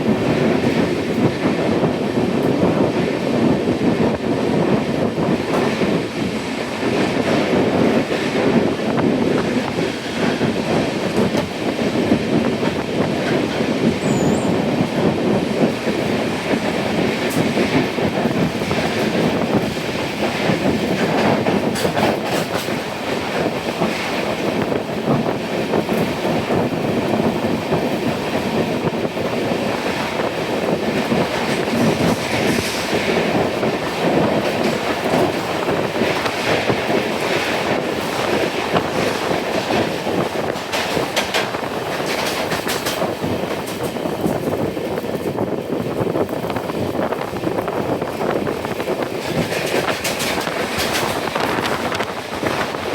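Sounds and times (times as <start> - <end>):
clickety-clack of rail joints: 0.0 - 52.9
train wheels rumbling on rails: 0.0 - 52.9
wheel squeal: 14.0 - 14.6.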